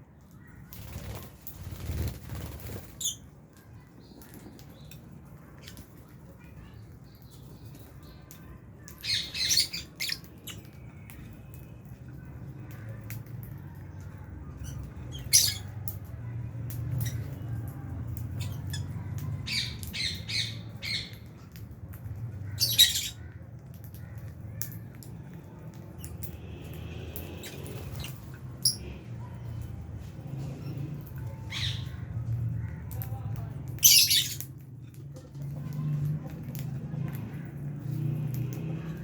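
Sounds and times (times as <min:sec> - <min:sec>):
lovebirds squawking and chirping: 0:00.6 - 0:03.3, 0:08.8 - 0:11.3, 0:14.6 - 0:16.0, 0:18.2 - 0:21.6, 0:22.2 - 0:23.4, 0:27.2 - 0:29.0, 0:31.3 - 0:33.0, 0:33.7 - 0:34.6.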